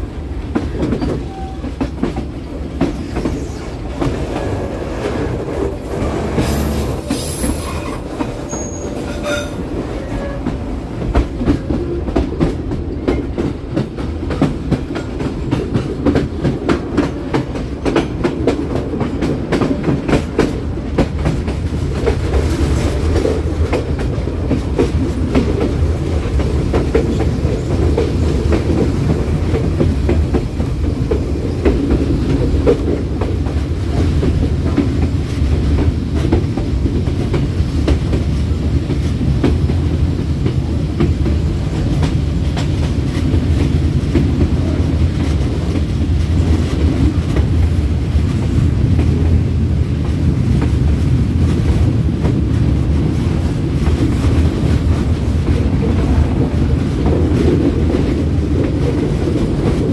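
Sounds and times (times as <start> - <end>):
clickety-clack over rail joints: 0.0 - 59.9
train wheels rumbling on rails: 0.0 - 59.9
high wheel squeal: 4.4 - 10.5.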